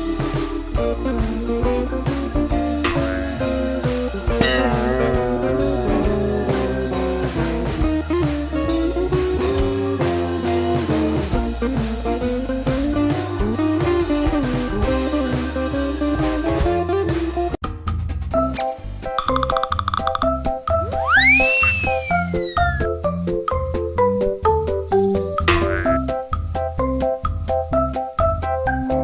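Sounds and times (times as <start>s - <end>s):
blues-rock guitar and drums: 0.0s - 16.8s.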